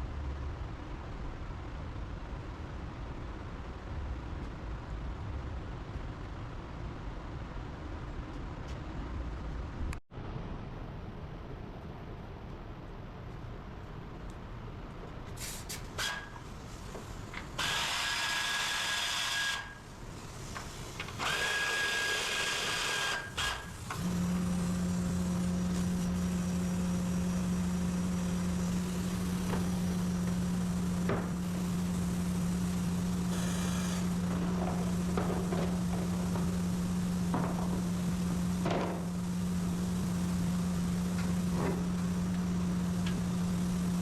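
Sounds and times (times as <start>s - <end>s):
power tool bursts: 17.6s - 19.8s, 21.2s - 24.2s, 32.8s - 34.2s
low machine hum: 23.2s - 44.0s.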